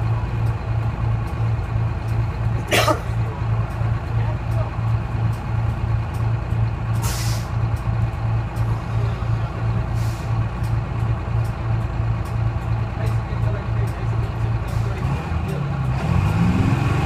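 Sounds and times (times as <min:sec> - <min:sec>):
diesel bus engine drone: 0:00.0 - 0:17.0
compressed air hiss: 0:07.0 - 0:07.5.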